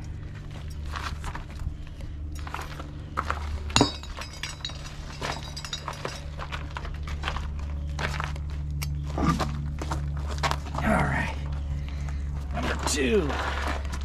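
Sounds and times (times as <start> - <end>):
steady low hum: 0.0 - 14.0
knocks and footsteps: 2.4 - 14.0
sharp metallic clink: 3.8 - 6.3.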